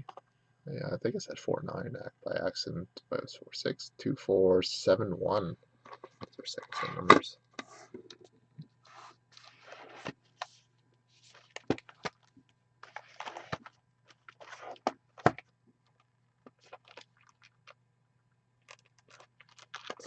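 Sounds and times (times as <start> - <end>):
steady low hum: 0.0 - 16.6
card boxes scraping and rustling: 8.8 - 12.0, 12.8 - 14.9.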